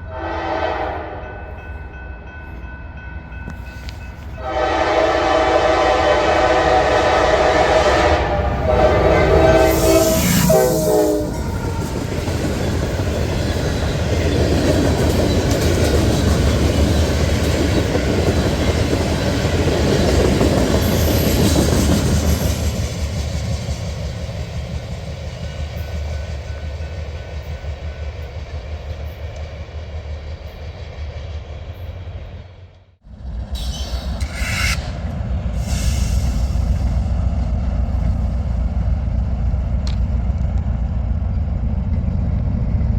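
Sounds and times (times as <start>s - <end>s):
train horn: 0.0s - 1.6s, 4.4s - 12.4s
train rolling past: 0.0s - 42.9s.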